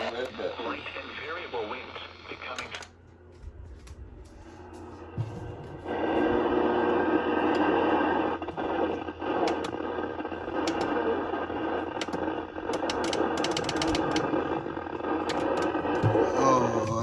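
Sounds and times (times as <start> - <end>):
radio static noise: 0.0 - 3.0, 4.5 - 17.0
sharp clicks: 9.4 - 9.8, 10.5 - 11.0, 11.9 - 14.5.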